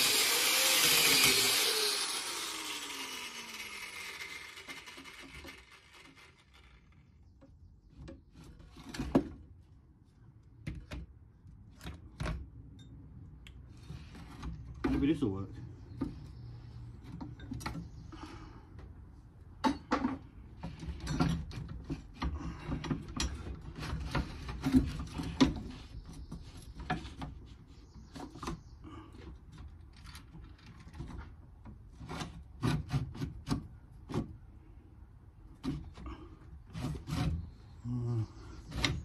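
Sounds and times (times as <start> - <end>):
tool scraping: 0.0 - 7.0, 35.6 - 37.8.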